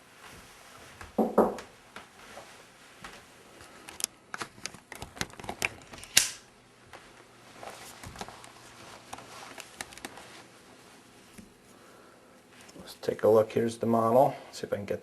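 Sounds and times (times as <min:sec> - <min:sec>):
soft rustling: 0:00.0 - 0:03.9, 0:06.8 - 0:13.2.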